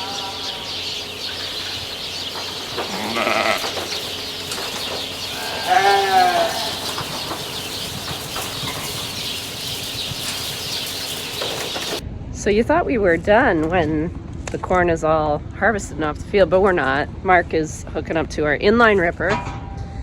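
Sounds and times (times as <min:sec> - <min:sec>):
sheep bleating: 0:00.0 - 0:01.0, 0:02.8 - 0:03.9, 0:05.3 - 0:07.0.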